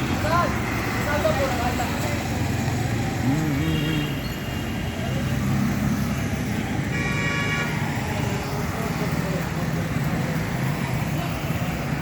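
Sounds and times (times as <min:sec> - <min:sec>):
vehicle horn tooting: 0:06.9 - 0:07.8.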